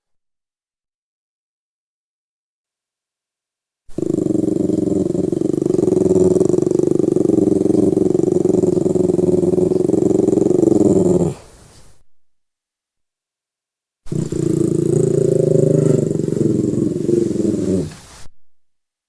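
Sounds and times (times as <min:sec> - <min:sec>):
dog growling: 0:03.9 - 0:11.5, 0:14.1 - 0:18.0.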